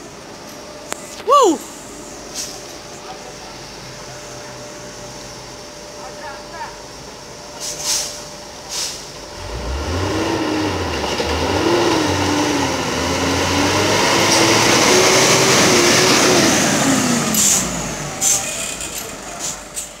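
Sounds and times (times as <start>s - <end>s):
diesel truck engine revving: 9.2s - 20.0s.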